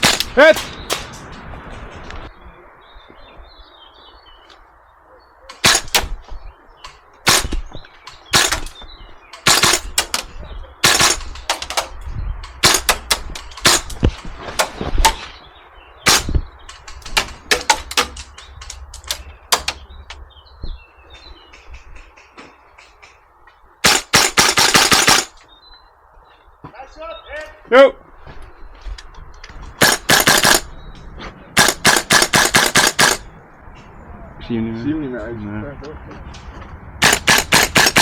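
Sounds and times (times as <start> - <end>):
airsoft rifles firing sharp cracks: 0.0 - 1.2, 5.5 - 6.2, 7.2 - 14.0, 16.0 - 18.3, 23.8 - 25.4, 29.8 - 30.7, 31.6 - 33.3, 37.0 - 38.0.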